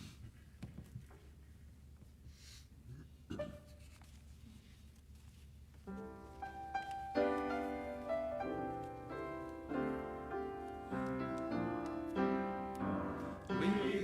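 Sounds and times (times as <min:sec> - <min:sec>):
piano playing hymn chords: 0:05.9 - 0:14.0.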